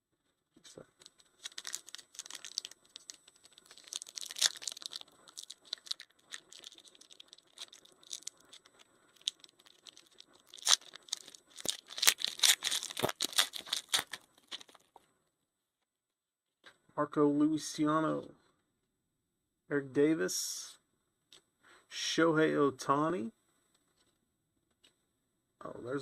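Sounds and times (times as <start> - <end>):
wrapper tearing and crinkling: 1.0 - 14.9.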